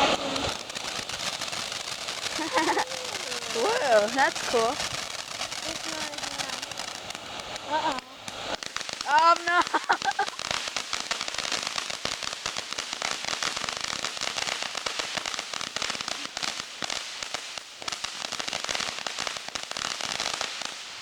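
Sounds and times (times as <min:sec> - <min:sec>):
firework crackling: 0:00.0 - 0:21.0.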